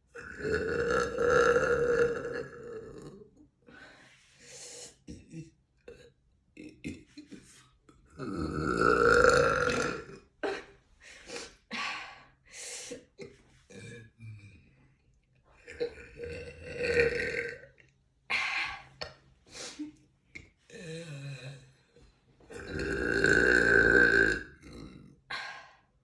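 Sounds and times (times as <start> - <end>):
woman burping: 0.1 - 3.2, 8.2 - 10.8, 15.7 - 19.2, 22.5 - 25.6.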